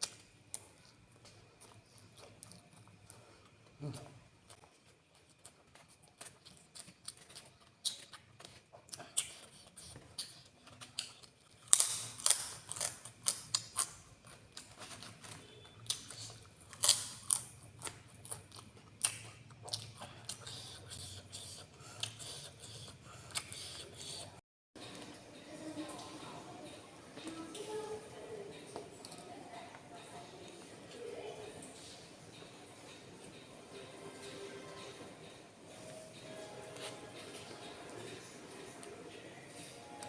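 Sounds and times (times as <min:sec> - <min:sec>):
chewing with crunches: 0:00.0 - 0:25.2.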